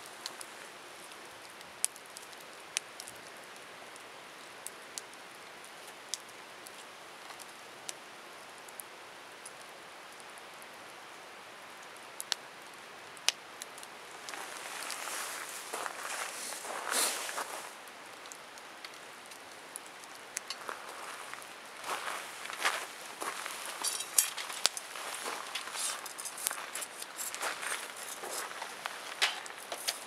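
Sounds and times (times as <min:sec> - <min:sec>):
campfire crackling and popping: 0:00.0 - 0:30.0
rustling: 0:14.2 - 0:17.8, 0:20.5 - 0:30.0.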